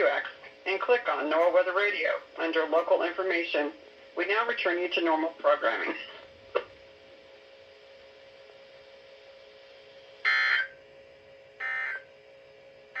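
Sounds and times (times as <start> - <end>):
faint radio hiss: 0.0 - 13.0
low steady hum: 0.0 - 13.0
buzzy digital data tones: 10.2 - 10.8, 11.6 - 12.1.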